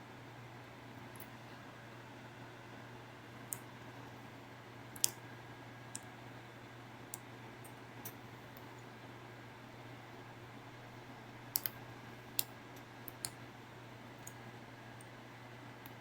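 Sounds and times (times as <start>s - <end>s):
sharp clicks: 11.5s - 11.8s.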